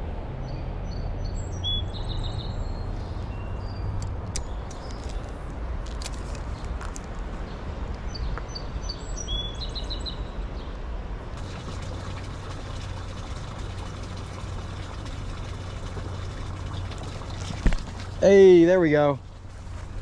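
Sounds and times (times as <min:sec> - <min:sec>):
bird chirping: 0:00.4 - 0:05.2, 0:08.1 - 0:10.8.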